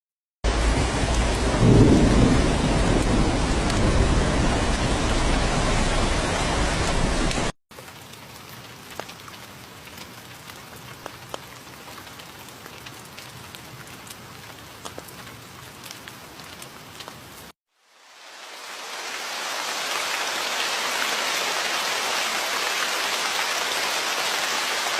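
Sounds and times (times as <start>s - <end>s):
heavy rain downpour: 0.4s - 24.9s
light rain drops ticking: 6.8s - 17.6s.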